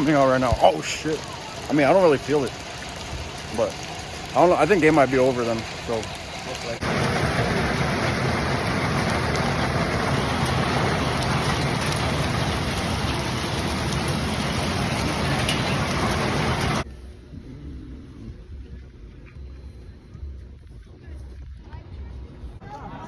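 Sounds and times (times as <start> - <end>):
heavy rain and hail: 0.0 - 16.9.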